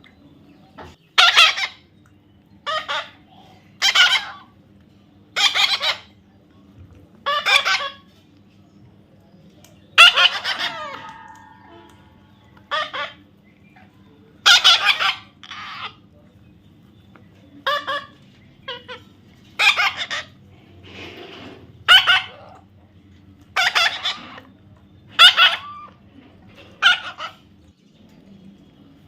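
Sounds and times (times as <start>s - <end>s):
parrot squawking: 1.2s - 1.9s, 2.6s - 3.2s, 3.8s - 4.6s, 5.4s - 6.2s, 7.2s - 8.1s, 10.0s - 16.1s, 17.6s - 20.5s, 21.8s - 22.7s, 23.5s - 24.5s, 25.1s - 27.6s.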